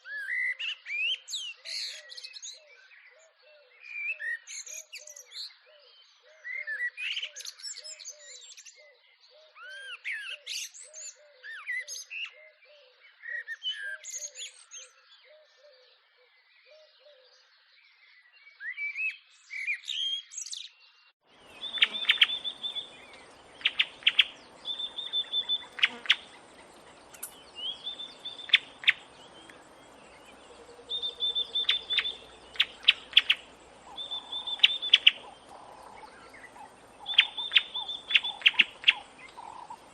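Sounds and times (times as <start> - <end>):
birds chirping and whistling: 21.4 - 39.9
sharp repeated bird calls: 21.4 - 39.9
low repeating bird note: 21.6 - 39.9.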